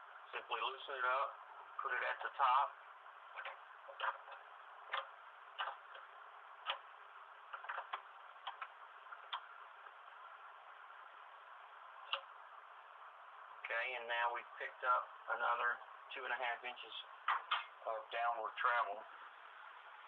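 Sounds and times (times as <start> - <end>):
sharp clicks and taps: 3.4 - 6.9, 7.5 - 10.0, 12.0 - 12.3.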